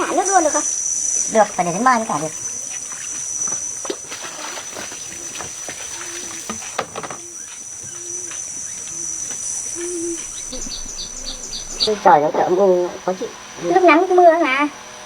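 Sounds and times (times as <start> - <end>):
insects droning: 0.0 - 15.0
short low calls: 8.0 - 12.7.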